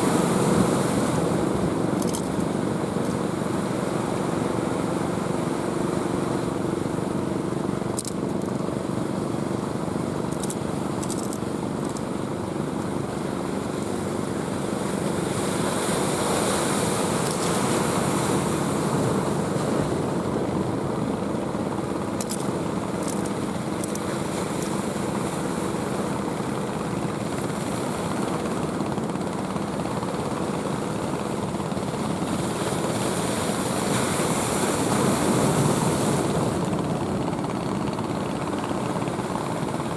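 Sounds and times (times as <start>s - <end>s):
ocean surf breaking: 14.8s - 20.9s, 30.6s - 37.7s.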